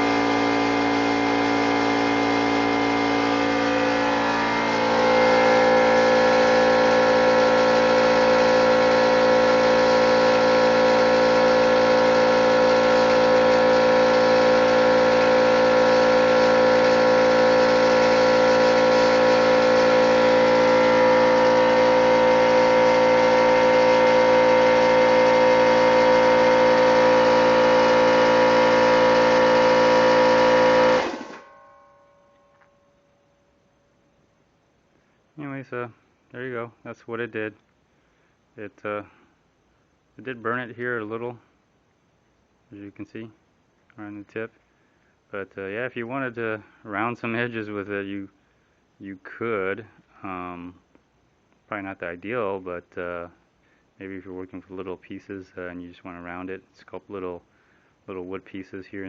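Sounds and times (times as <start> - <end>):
air die grinder whining: 0.0 - 31.5.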